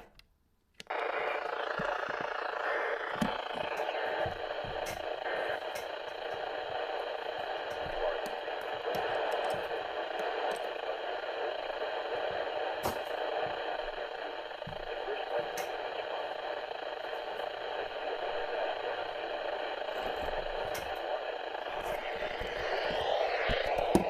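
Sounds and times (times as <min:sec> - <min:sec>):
crackling clicks: 0:00.0 - 0:24.0
radio static hiss: 0:00.8 - 0:24.0.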